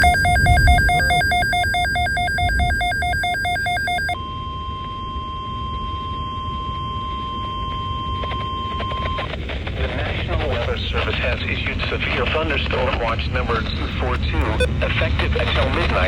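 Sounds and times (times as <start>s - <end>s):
low rumble: 0.0s - 3.2s
two-pitch electronic warble: 0.0s - 4.2s
steady high alarm tone: 0.0s - 8.8s.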